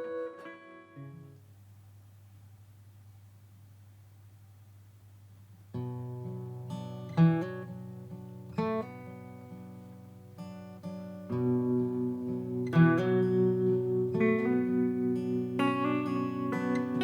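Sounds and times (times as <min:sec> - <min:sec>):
faint hum: 0:01.0 - 0:17.0
acoustic guitar picking: 0:05.7 - 0:17.0.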